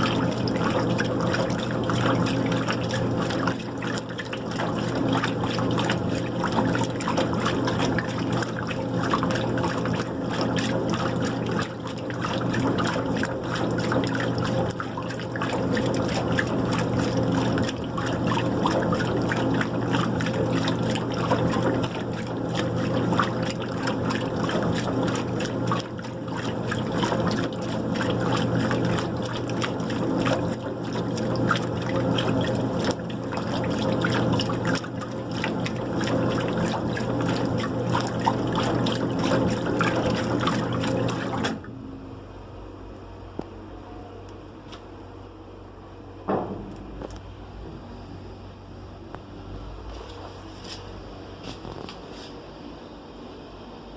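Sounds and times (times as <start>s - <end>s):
water splashing in tub: 0.0s - 41.8s
washing machine humming: 0.0s - 53.9s.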